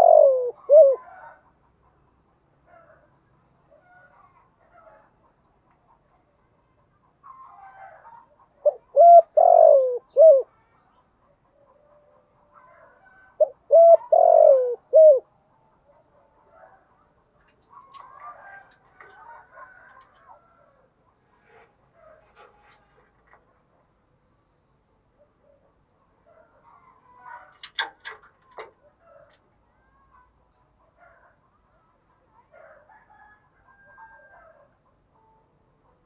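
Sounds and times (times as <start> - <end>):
dove cooing: 0.0 - 1.4, 7.8 - 10.6, 12.7 - 15.3.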